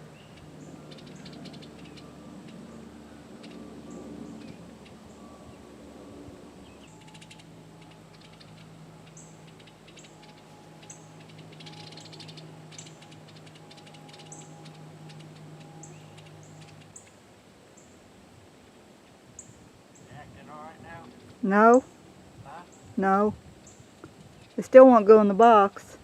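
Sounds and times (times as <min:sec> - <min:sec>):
bluebirds chattering: 0:00.0 - 0:18.1, 0:19.0 - 0:26.0
steady low hum: 0:00.0 - 0:26.0
high short bird calls: 0:06.6 - 0:18.0.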